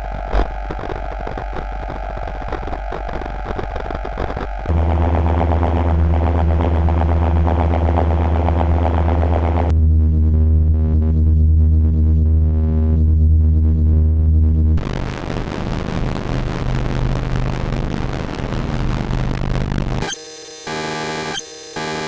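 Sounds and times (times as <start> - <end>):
deep electrical buzzing hum: 4.6 - 15.2, 20.0 - 22.0
glitchy buzzing tone: 4.7 - 9.7, 20.0 - 22.0
hissing static: 4.7 - 9.7.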